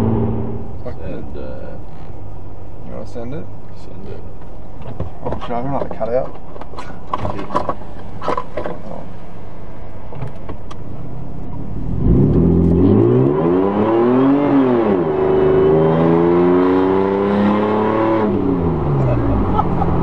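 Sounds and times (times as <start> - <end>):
car engine accelerating: 0.0 - 2.3, 10.0 - 20.0.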